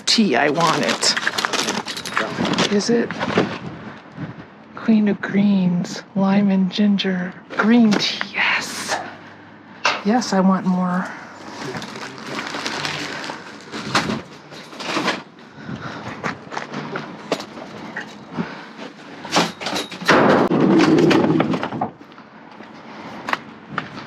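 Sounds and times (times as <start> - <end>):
rustling: 11.4 - 15.2
items knocking and thudding: 19.2 - 22.0.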